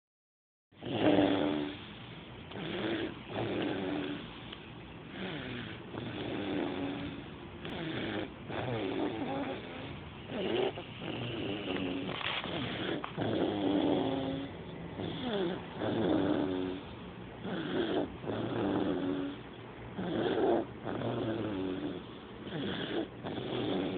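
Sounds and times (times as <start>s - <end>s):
person snoring: 0.8s - 1.9s, 2.5s - 4.3s, 5.1s - 19.4s, 20.0s - 23.9s.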